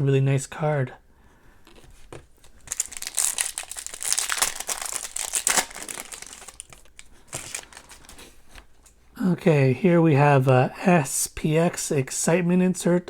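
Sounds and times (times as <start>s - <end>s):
foil wrapper crinkling: 2.4s - 8.9s.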